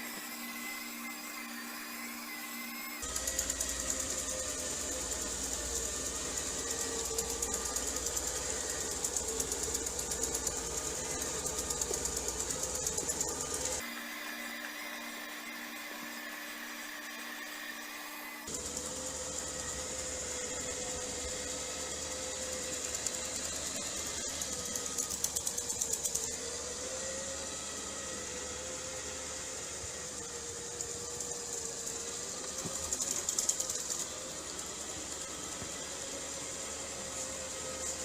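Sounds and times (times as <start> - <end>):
robot vacuum cleaner running: 0.0 - 38.0
fast rattling: 3.0 - 13.8, 31.0 - 34.3.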